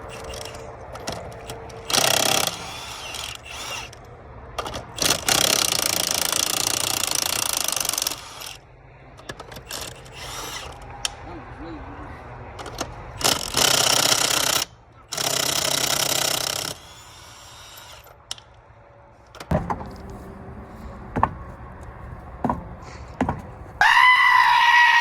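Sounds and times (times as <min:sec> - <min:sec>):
impact wrench hammering: 0:00.0 - 0:04.0, 0:12.6 - 0:18.4.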